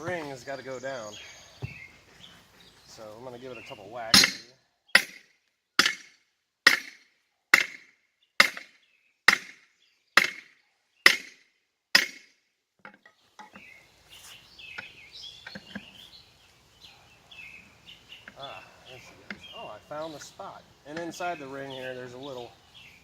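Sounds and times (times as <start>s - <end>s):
shuffling: 14.0s - 14.5s.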